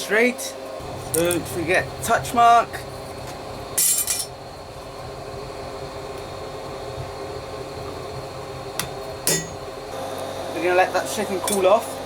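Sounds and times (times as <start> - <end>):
forge roaring: 0.8 - 10.9.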